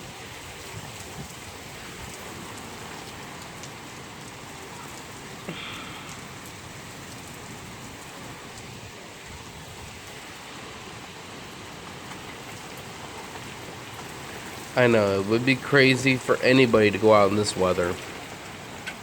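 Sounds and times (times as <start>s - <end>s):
heavy rain hiss: 0.0s - 19.0s
raindrop ticks: 0.4s - 10.5s, 11.4s - 19.0s.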